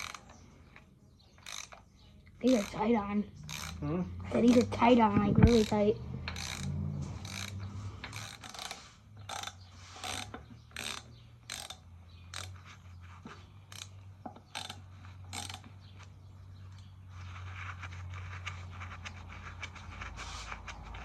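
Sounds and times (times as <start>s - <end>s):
ratchet wrench clicking: 0.0s - 0.8s, 1.4s - 3.8s, 4.4s - 12.6s, 13.6s - 16.1s.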